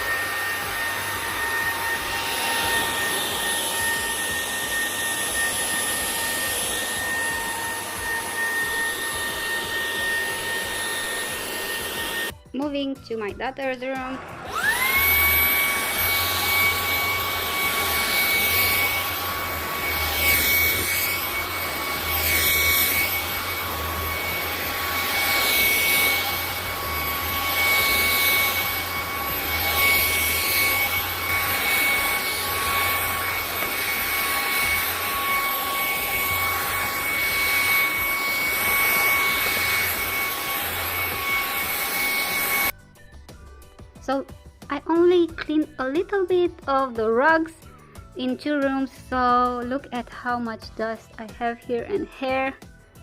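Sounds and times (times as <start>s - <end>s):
suction air over rug: 0.0s - 12.3s, 14.1s - 42.7s
stick vacuum cleaner running: 0.0s - 12.4s, 14.0s - 42.8s.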